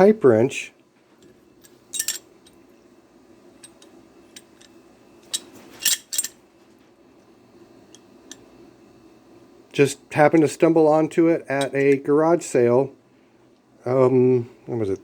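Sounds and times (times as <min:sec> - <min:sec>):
metal wrench parts clinking: 0:01.6 - 0:02.2, 0:03.6 - 0:06.4.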